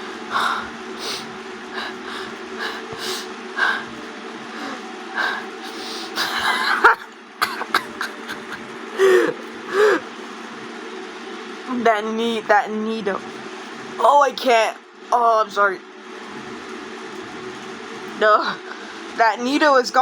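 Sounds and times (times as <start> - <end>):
man laughing breathlessly: 4.5 - 10.1.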